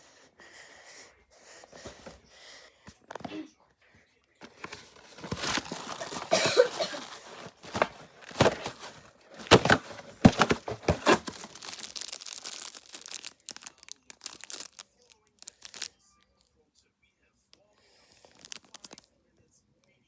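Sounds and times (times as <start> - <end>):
snack packaging crinkling: 4.4 - 16.0, 18.0 - 19.0.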